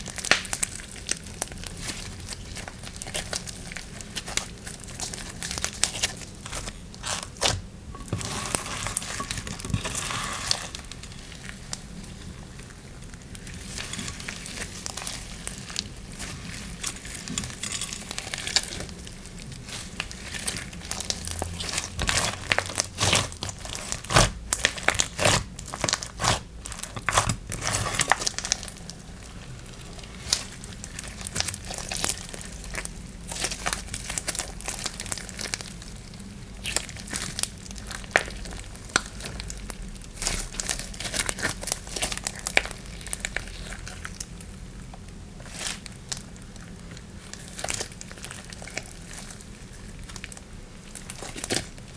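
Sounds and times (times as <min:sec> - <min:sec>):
slime squeezed with crackling pops: 0:19.7 - 0:28.5.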